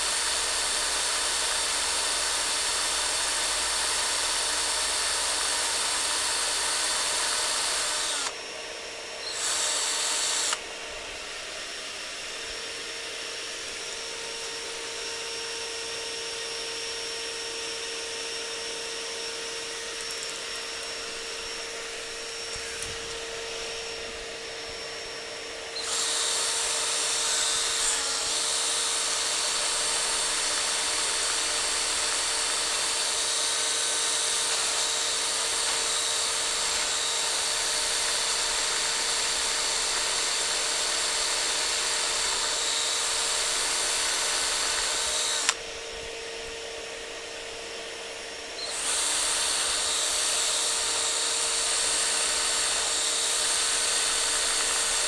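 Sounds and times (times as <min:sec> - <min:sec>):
power drill grinding steel rivet: 0:00.0 - 0:08.4, 0:09.2 - 0:10.7, 0:19.2 - 0:24.0, 0:25.7 - 0:45.8, 0:48.6 - 0:55.0
vacuum running: 0:00.0 - 0:55.0.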